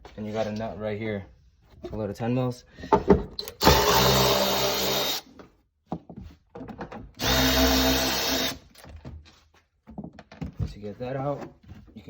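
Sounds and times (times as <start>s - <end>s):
power drill spinning socket: 3.4s - 5.2s, 7.2s - 8.8s.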